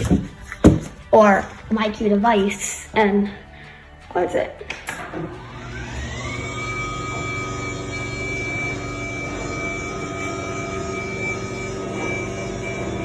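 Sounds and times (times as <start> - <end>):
garage door opener whining: 4.8 - 13.0.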